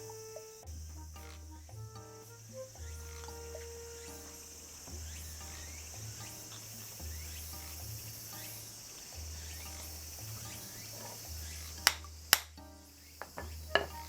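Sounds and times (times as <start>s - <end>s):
music with low bass line: 0.0s - 12.7s
crickets chirring: 0.0s - 14.0s.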